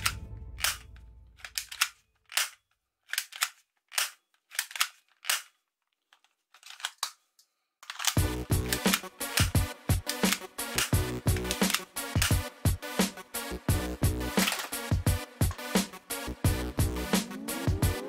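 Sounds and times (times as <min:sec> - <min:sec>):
background music: 0:00.0 - 0:01.9, 0:08.2 - 0:18.0
toy gun mechanical clicks: 0:00.0 - 0:07.2, 0:07.8 - 0:12.4, 0:14.4 - 0:14.9.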